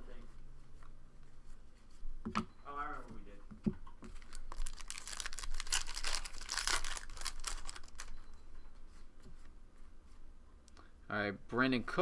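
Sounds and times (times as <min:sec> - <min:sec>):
foil wrapper crinkling and tearing: 0:04.2 - 0:08.1.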